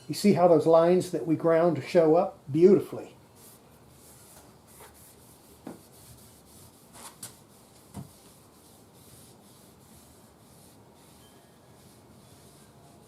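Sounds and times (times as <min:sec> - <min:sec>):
rubbing strokes on wood: 0:03.4 - 0:13.0.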